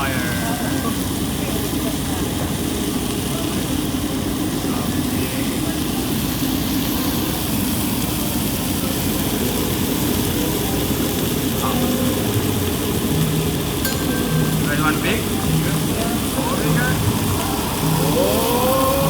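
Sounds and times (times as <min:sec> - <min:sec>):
faint voices: 0:00.0 - 0:19.0
grill roaring: 0:00.0 - 0:19.0.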